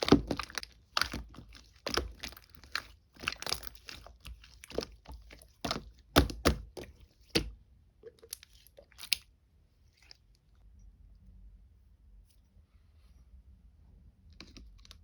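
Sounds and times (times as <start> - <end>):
slime squished by hand popping: 5.6 - 7.5.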